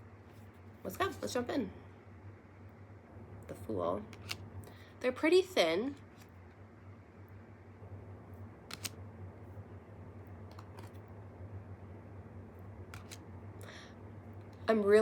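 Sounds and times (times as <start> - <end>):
steady low hum: 0.0 - 15.0
cards clicking when handled: 4.1 - 4.4, 8.7 - 9.0, 10.5 - 11.0, 12.9 - 13.2.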